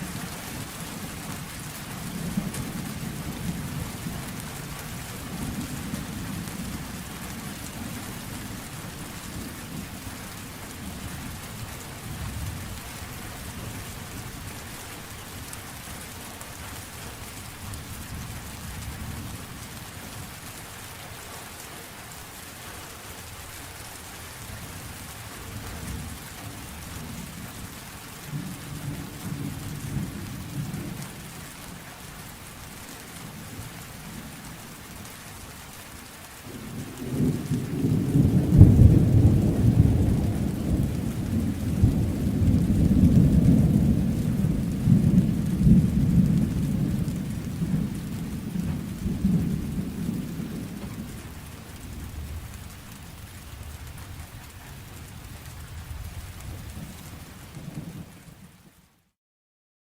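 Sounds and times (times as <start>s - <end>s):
steady rain hissing: 0.0s - 59.2s
thunder rumbling: 36.4s - 58.6s.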